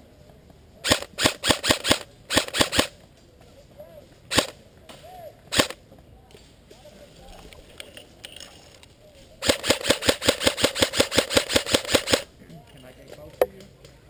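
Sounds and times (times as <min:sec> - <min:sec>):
airsoft gun shots: 0:00.8 - 0:02.9, 0:04.3 - 0:04.6, 0:05.5 - 0:05.8, 0:09.4 - 0:12.3.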